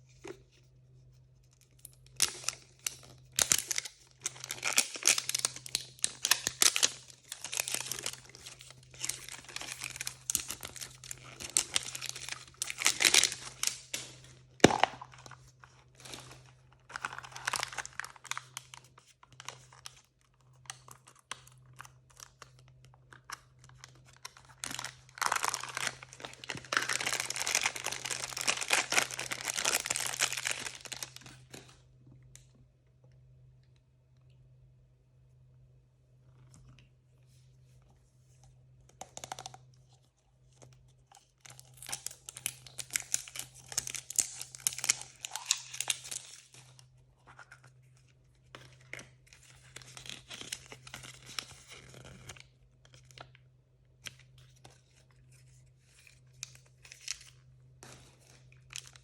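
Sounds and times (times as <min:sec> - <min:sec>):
faint low hum: 0:00.0 - 0:59.0
plastic packaging crinkling and tearing: 0:01.9 - 0:20.0, 0:20.6 - 0:31.8, 0:41.1 - 0:46.8, 0:48.5 - 0:53.4, 0:54.0 - 0:59.0.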